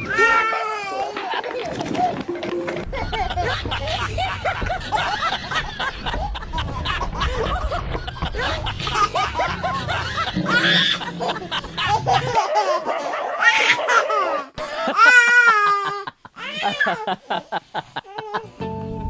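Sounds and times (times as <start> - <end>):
people laughing: 0.8 - 13.0, 13.6 - 18.6
low background rumble: 2.8 - 12.4.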